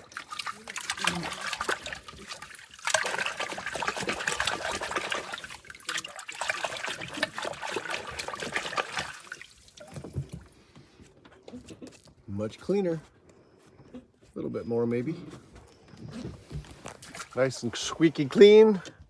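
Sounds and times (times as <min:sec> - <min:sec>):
water splashing and trickling: 0:00.0 - 0:10.6, 0:16.9 - 0:18.7.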